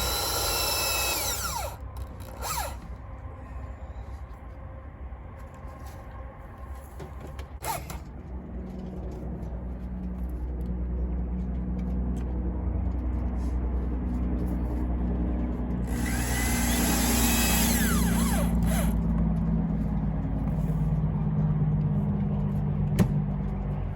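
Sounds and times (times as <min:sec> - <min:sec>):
engine humming: 0:00.0 - 0:23.9.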